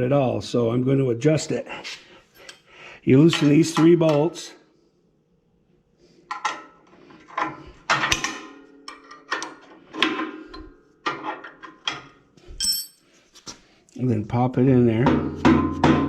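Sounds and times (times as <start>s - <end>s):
wrench clinking on metal bolts: 7.4s - 9.7s, 10.5s - 13.0s.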